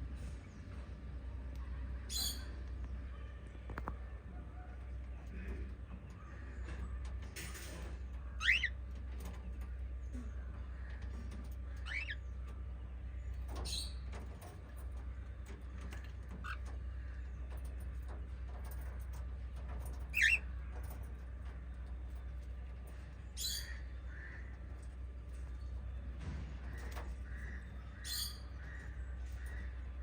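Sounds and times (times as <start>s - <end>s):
steady low hum: 0.0s - 30.0s
parrots chirping and squawking: 2.1s - 2.6s, 8.2s - 9.2s, 10.5s - 12.4s, 15.8s - 17.8s, 19.6s - 21.0s, 23.0s - 25.6s, 26.6s - 30.0s.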